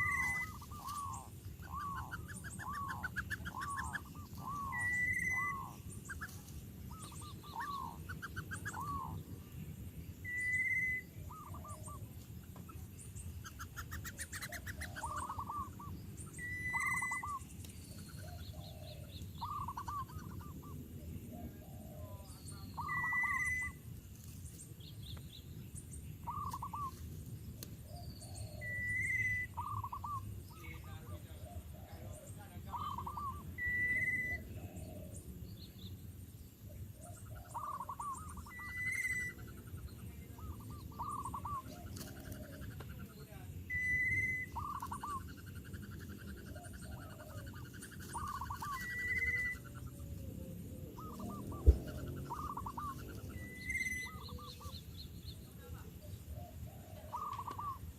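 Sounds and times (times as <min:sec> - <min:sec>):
pulsing chirp: 0:00.0 - 0:09.5, 0:12.7 - 0:20.9, 0:37.1 - 0:55.8
birds calling: 0:00.0 - 0:57.9.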